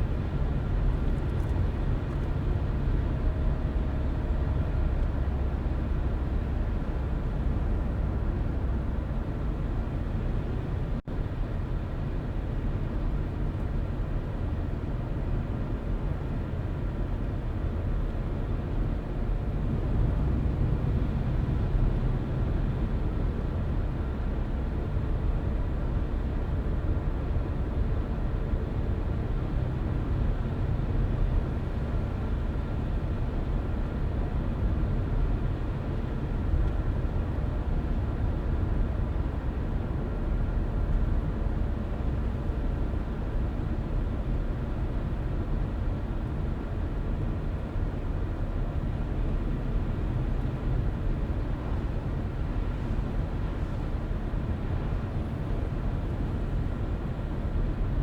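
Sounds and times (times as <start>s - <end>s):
road and tyre noise: 13.2s - 58.0s.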